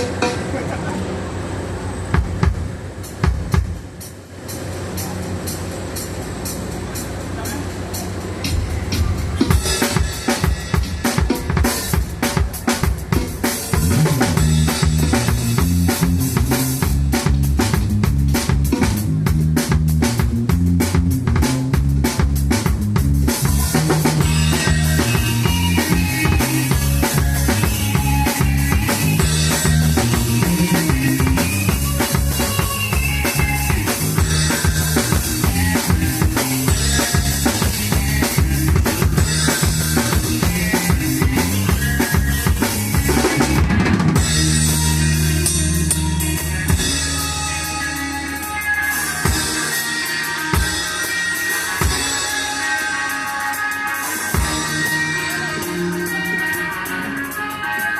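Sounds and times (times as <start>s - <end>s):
drum kit: 0.0s - 1.0s, 2.0s - 57.9s
instrumental rock band: 0.0s - 57.9s
busy bass line: 13.0s - 53.1s.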